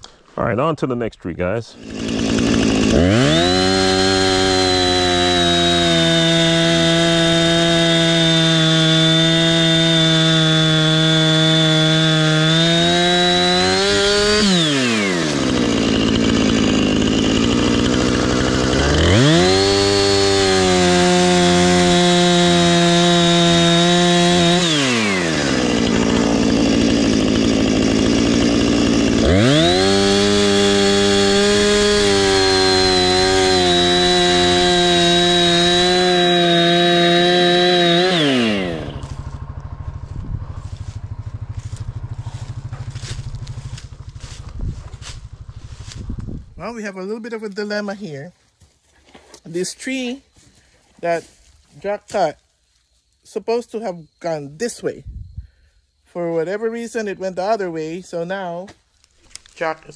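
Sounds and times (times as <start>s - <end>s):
chainsaw cutting at full throttle: 1.8s - 46.7s
chainsaw idling: 1.8s - 46.7s.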